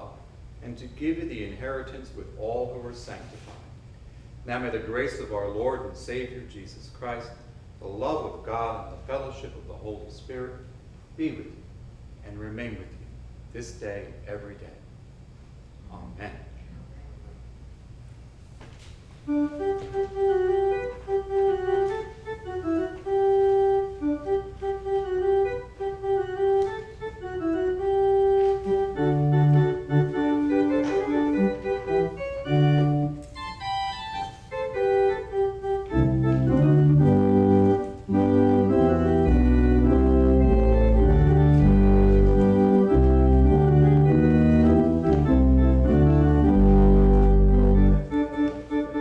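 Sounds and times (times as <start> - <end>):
organ playing chords: 19.2 - 49.0.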